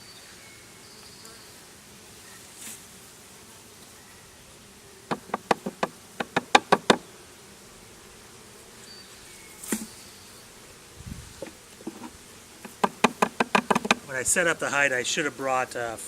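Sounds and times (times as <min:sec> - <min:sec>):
honeybees humming: 0:00.7 - 0:15.9
sharp knocks: 0:05.1 - 0:07.0, 0:11.4 - 0:14.1.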